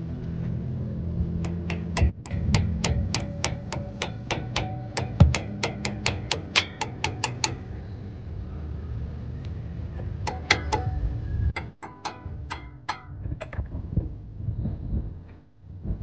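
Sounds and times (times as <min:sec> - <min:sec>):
ratchet wrench clicking: 0:01.4 - 0:07.7.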